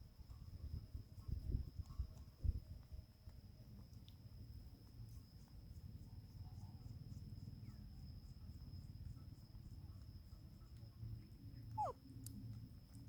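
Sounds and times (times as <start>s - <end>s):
insect drone: 0.0s - 13.0s
baby monkey squealing: 11.8s - 12.0s.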